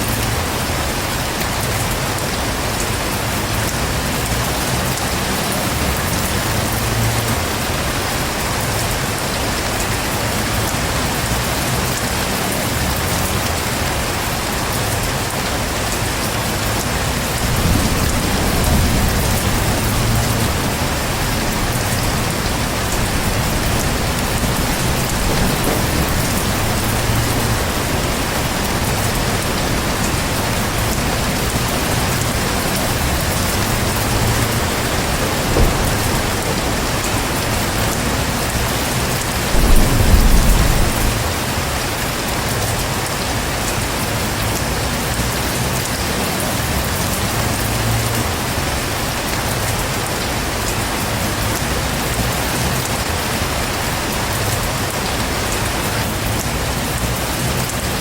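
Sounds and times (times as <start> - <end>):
heavy rain falling: 0.0 - 58.0
low rumble of thunder: 16.5 - 42.5.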